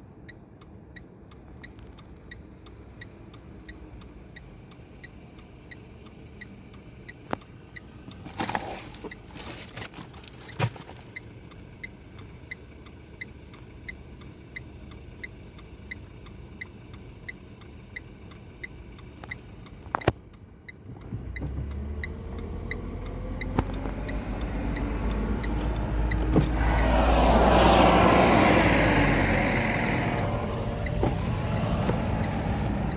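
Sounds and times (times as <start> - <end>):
indicator relay ticking: 0.2 - 8.2, 11.0 - 32.9
engine revving: 20.9 - 32.9.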